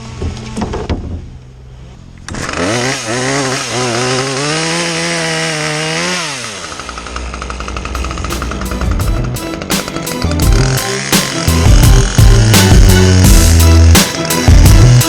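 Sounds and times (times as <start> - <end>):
chainsaw engine revving and idling: 2.2 - 15.0.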